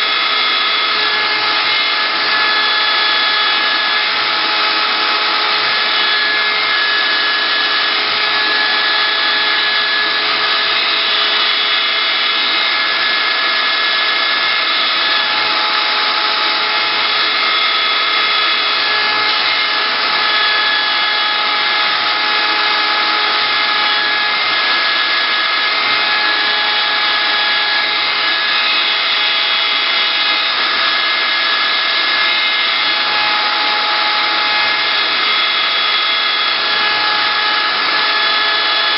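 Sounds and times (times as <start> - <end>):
wood router whining: 0.0 - 38.9.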